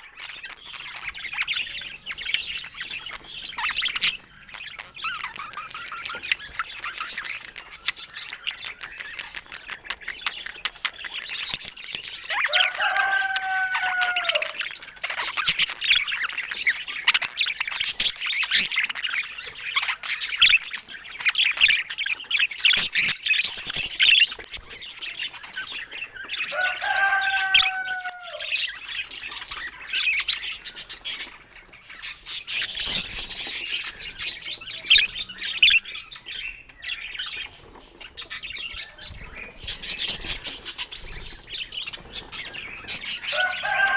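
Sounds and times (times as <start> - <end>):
budgerigars chattering: 0.0 - 43.9
low pitch-bending bird calls: 12.5 - 14.7, 26.5 - 28.8.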